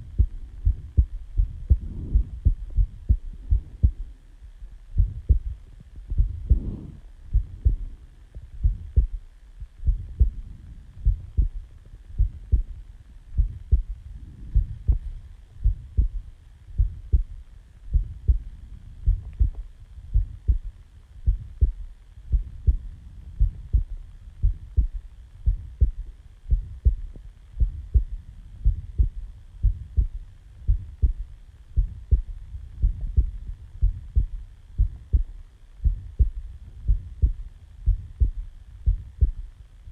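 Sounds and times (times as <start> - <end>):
heartbeat thumps: 0.0 - 39.5.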